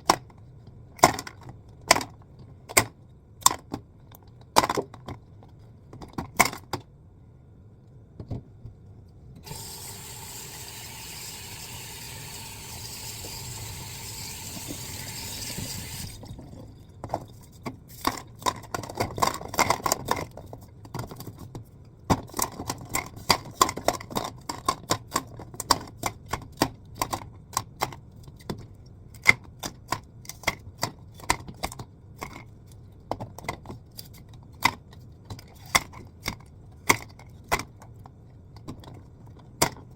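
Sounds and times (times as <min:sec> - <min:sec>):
water running into a container: 0:09.4 - 0:16.6.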